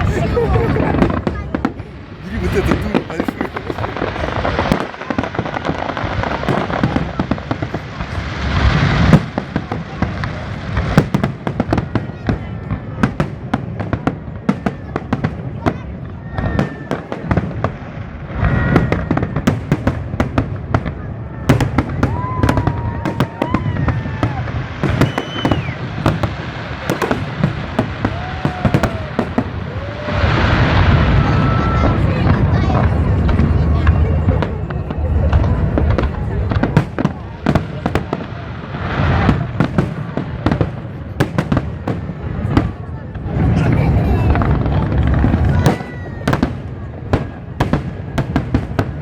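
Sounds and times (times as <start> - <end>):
fireworks crackling and popping: 0.0 - 49.0
sharp firework bangs: 0.0 - 49.0
firework whistle: 22.0 - 32.4.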